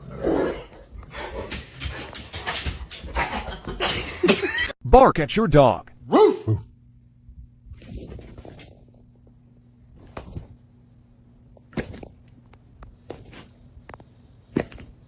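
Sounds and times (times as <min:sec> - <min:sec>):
faint steady hum: 0:04.9 - 0:15.0.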